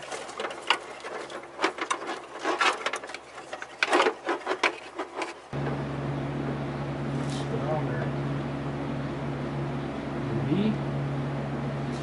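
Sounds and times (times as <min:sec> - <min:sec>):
cable scraping against panels: 0:00.0 - 0:05.7
steady hum: 0:05.5 - 0:12.0.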